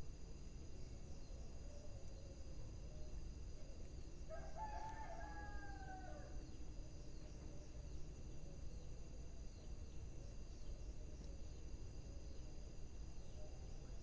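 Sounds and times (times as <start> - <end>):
faint insect chirring: 0.0 - 14.0
distant rooster crowing: 4.3 - 6.4.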